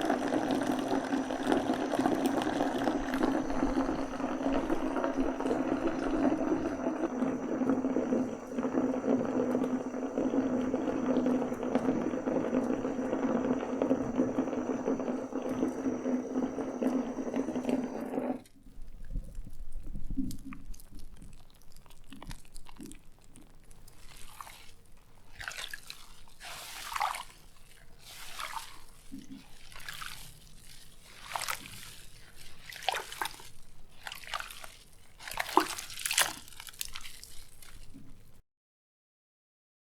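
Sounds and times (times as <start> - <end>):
water dripping and sloshing: 0.0 - 18.4, 19.0 - 38.4
tap water pouring into bathtub: 0.0 - 18.5, 25.3 - 38.2.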